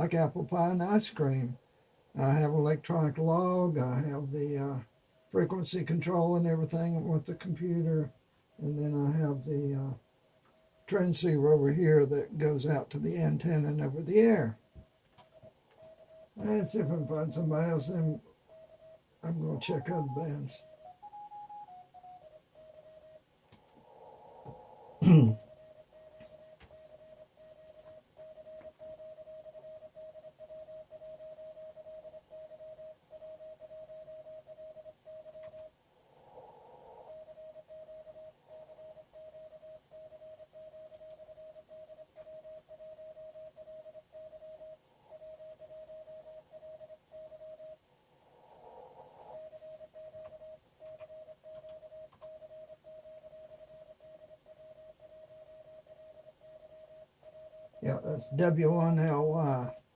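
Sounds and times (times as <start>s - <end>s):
radio hiss: 0.0s - 14.6s, 15.3s - 21.6s, 51.9s - 59.8s
morse code tone: 15.9s - 23.2s, 49.4s - 59.8s.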